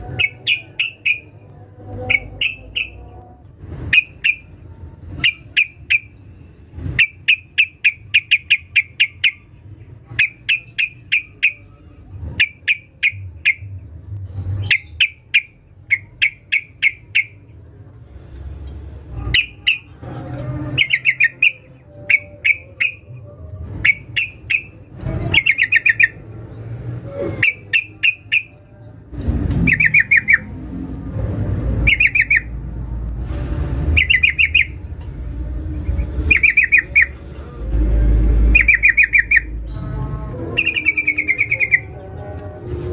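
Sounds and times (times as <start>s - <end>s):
bird chattering calls: 0.1s - 1.4s, 7.0s - 9.5s, 10.2s - 11.7s, 19.2s - 20.0s, 29.7s - 30.5s, 31.8s - 32.5s, 34.0s - 34.8s, 36.3s - 37.2s, 38.6s - 39.8s
low rumble: 28.8s - 42.9s.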